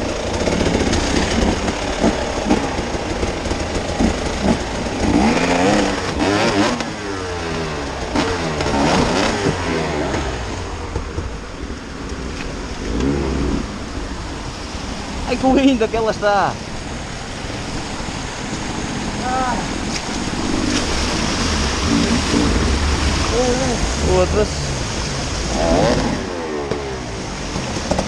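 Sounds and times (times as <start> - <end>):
off-road vehicle engine revving: 0.0 - 28.0.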